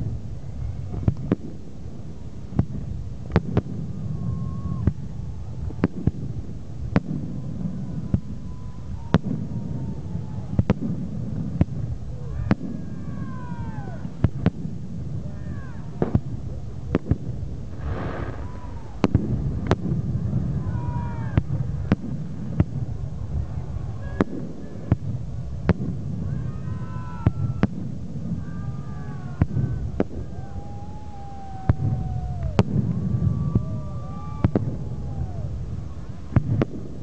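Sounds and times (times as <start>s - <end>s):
fireworks bangs: 2.5s - 37.0s
falling firework whistles: 4.1s - 5.9s, 17.7s - 21.7s, 28.4s - 35.7s
buzzing firework crackle: 15.9s - 23.7s.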